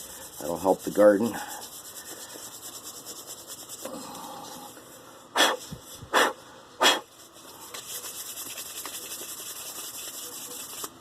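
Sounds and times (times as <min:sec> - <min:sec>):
light rubbing: 0:00.0 - 0:04.8, 0:07.1 - 0:11.0
puffs of breath: 0:03.8 - 0:07.7.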